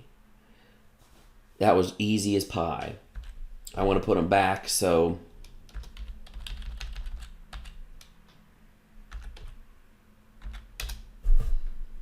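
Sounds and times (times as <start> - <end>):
computer keyboard typing: 2.7 - 4.1, 5.4 - 8.3, 9.1 - 9.6, 10.4 - 11.1.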